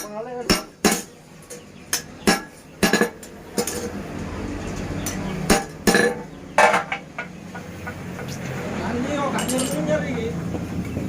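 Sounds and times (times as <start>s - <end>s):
hammer clanging on metal: 0.0s - 4.0s, 5.0s - 8.0s.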